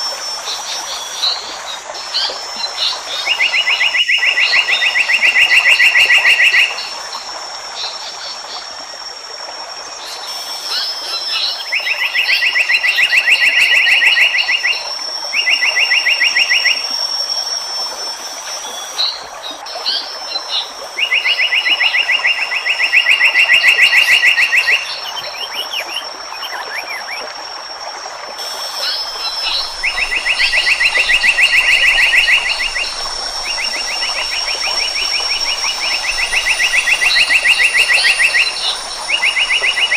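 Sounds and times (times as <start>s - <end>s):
faint chirps: 9.8s - 39.9s
high-pitched whine: 28.2s - 39.9s.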